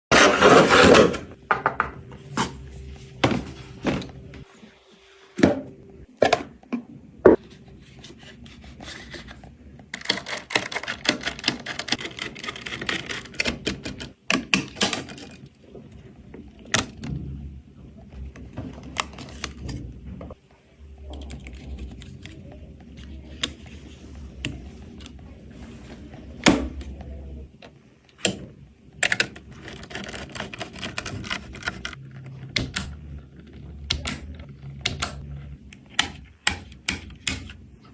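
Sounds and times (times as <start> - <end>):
computer parts clicking and rattling: 9.9 - 15.6, 29.0 - 35.3.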